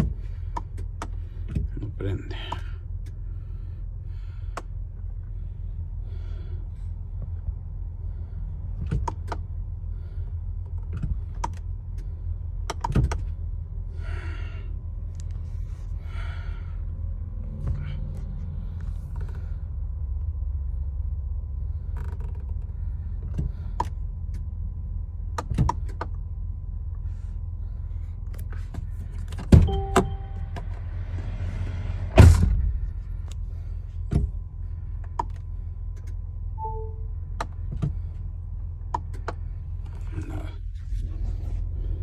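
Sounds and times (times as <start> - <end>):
low steady rumble: 0.0 - 42.0
heavy thumps: 29.3 - 34.4
electronic chime beeps: 29.6 - 30.8, 36.6 - 37.1.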